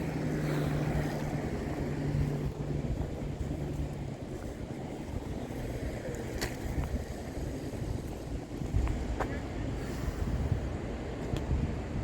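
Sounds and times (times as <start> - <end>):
low motor hum: 0.0 - 9.6
wind buffeting microphone: 0.0 - 12.0.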